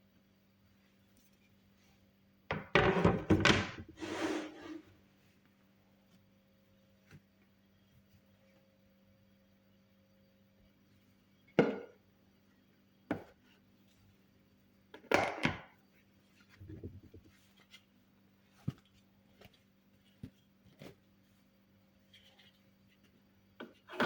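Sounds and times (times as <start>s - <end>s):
kitchen knocks and clatter: 2.5s - 4.0s.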